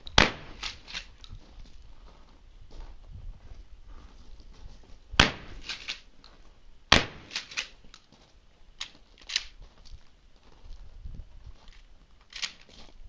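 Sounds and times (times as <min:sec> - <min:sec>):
gunshots: 0:00.2 - 0:01.1, 0:05.2 - 0:06.0, 0:06.9 - 0:07.7.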